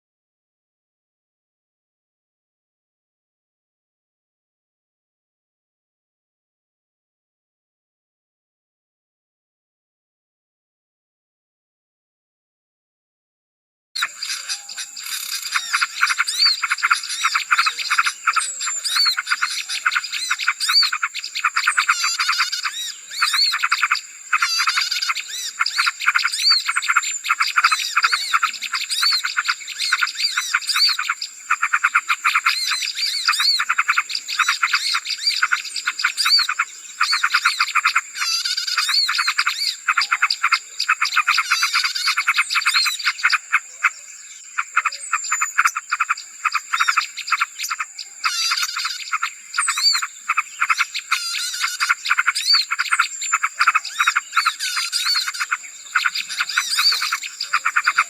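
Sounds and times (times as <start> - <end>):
birds chattering and trilling: 14.0 - 58.0.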